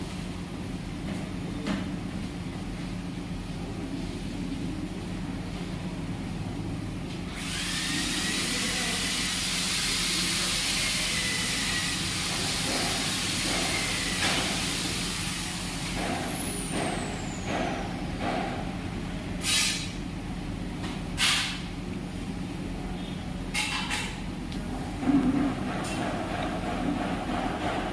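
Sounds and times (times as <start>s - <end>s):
high-pressure jet hissing: 7.4s - 16.6s
short hiss blasts: 19.4s - 20.0s.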